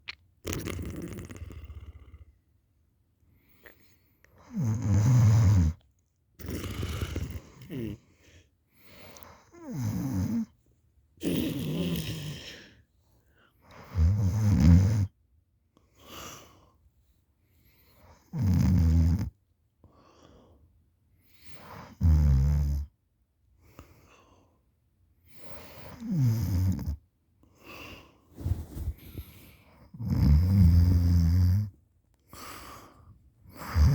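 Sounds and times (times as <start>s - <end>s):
person snoring heavily: 0.5s - 2.1s, 6.4s - 8.0s, 11.2s - 12.6s, 33.5s - 33.9s
faint breaths: 27.5s - 30.0s, 32.2s - 33.9s.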